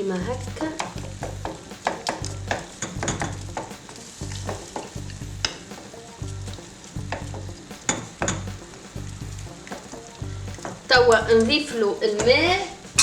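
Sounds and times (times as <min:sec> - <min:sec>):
food sizzling in a pan: 0:00.1 - 0:13.0.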